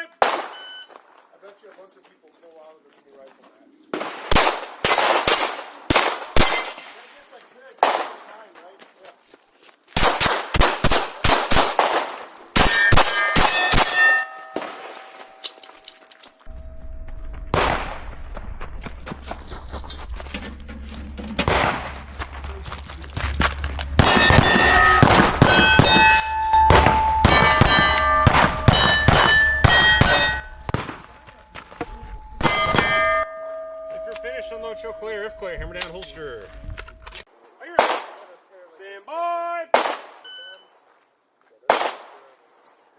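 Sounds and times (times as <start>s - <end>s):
pistol shots: 0.2s - 0.6s, 3.9s - 7.2s, 7.8s - 8.3s, 10.0s - 15.1s, 21.4s - 22.0s, 24.0s - 31.4s, 32.4s - 33.2s, 37.8s - 38.3s, 39.7s - 40.2s, 41.7s - 42.3s
steel targets clanging: 4.8s - 7.9s, 12.0s - 16.7s, 24.0s - 37.3s
steel plates ringing: 4.9s - 6.9s, 12.4s - 17.4s, 24.0s - 37.2s.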